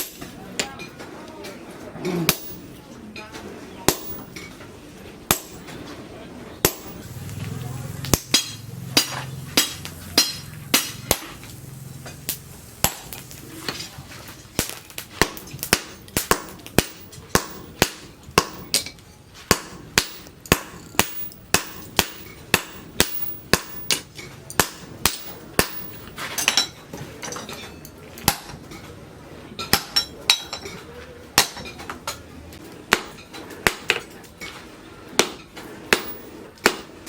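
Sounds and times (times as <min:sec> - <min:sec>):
hammer striking metal on anvil: 0:00.0 - 0:00.8, 0:02.2 - 0:02.8, 0:03.9 - 0:04.6, 0:05.3 - 0:05.8, 0:06.6 - 0:07.4, 0:08.0 - 0:13.8, 0:14.6 - 0:27.4, 0:29.7 - 0:30.7, 0:31.4 - 0:31.8, 0:32.9 - 0:34.1, 0:35.2 - 0:37.0.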